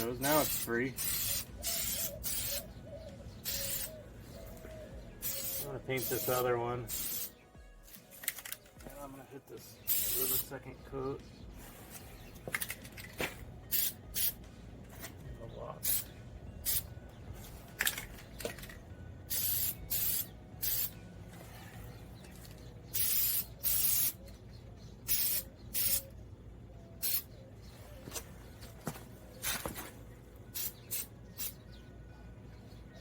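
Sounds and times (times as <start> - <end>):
spray paint can hissing: 0.3 - 2.7, 3.4 - 3.9, 5.2 - 7.3, 9.9 - 10.4, 13.7 - 14.4, 15.8 - 16.9, 19.3 - 21.0, 22.9 - 24.2, 25.1 - 26.1, 27.0 - 27.3, 30.6 - 31.6.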